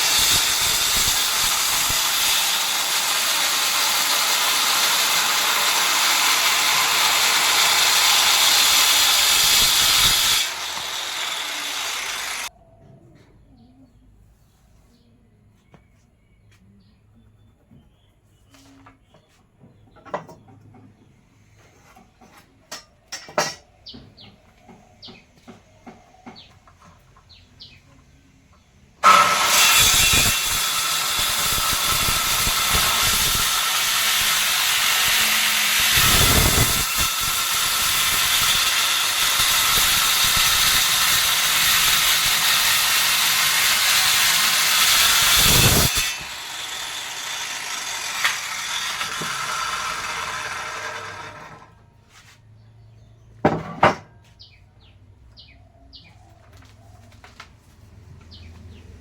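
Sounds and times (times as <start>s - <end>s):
workshop tool hissing: 0.0s - 12.5s, 29.0s - 49.6s.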